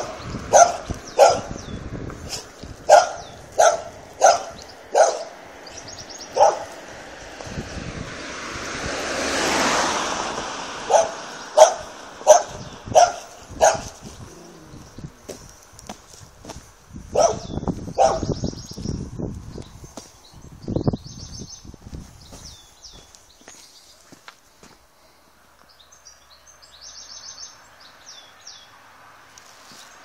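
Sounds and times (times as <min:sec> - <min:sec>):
dog barking: 0:00.0 - 0:01.6, 0:02.9 - 0:05.4, 0:06.3 - 0:06.8, 0:10.9 - 0:14.0, 0:17.1 - 0:18.4.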